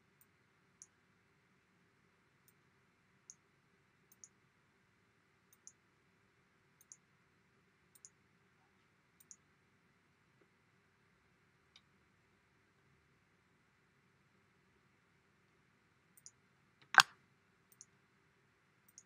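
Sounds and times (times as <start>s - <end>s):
keyboard keystroke clicks: 16.2s - 17.1s.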